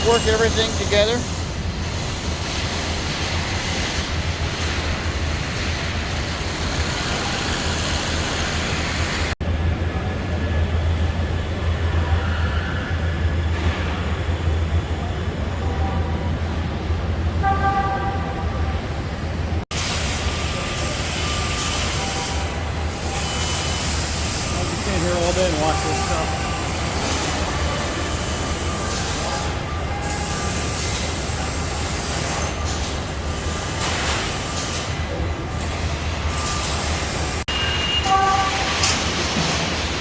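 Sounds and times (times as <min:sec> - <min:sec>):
hiss: 0:19.7 - 0:22.0.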